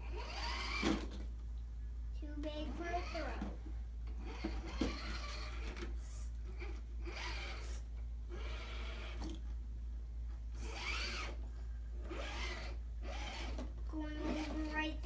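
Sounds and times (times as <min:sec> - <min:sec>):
electric motor whirring: 0:00.0 - 0:01.1, 0:02.5 - 0:03.5, 0:04.1 - 0:09.4, 0:10.5 - 0:15.0.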